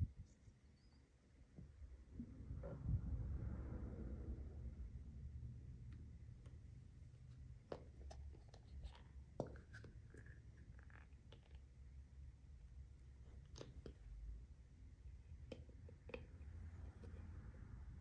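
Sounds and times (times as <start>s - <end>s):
low hum: 1.6s - 7.4s.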